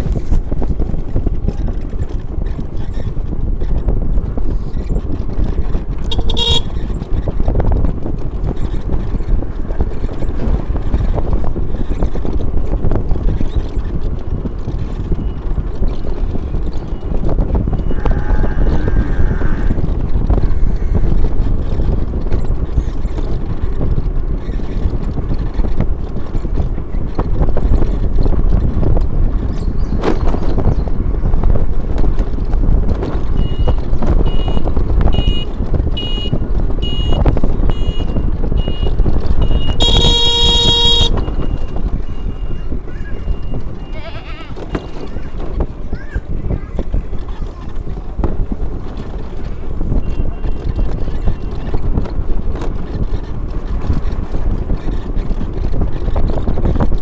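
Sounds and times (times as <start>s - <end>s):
road noise: 0.0s - 57.0s
wind rumble: 0.0s - 57.0s
higher vehicle horn: 6.1s - 6.8s, 35.2s - 41.4s
vehicle horn toot: 6.1s - 6.8s, 33.4s - 41.7s, 50.0s - 51.6s.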